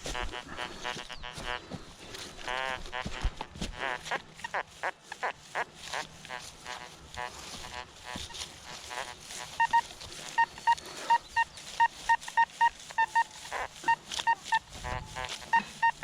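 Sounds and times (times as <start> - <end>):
metal detector beeping: 5.9 - 16.0.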